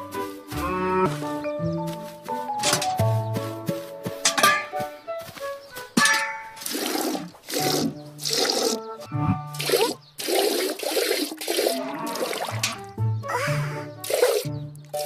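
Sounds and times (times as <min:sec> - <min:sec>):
cartoon background music: 0:00.0 - 0:03.6, 0:07.6 - 0:10.2, 0:11.6 - 0:15.0.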